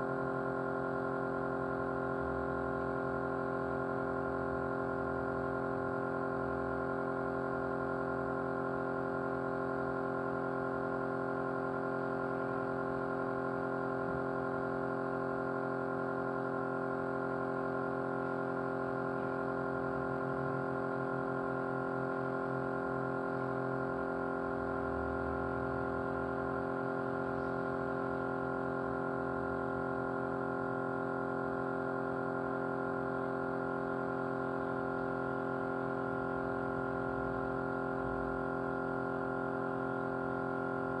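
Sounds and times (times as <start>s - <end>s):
small motor humming: 18.9s - 41.0s.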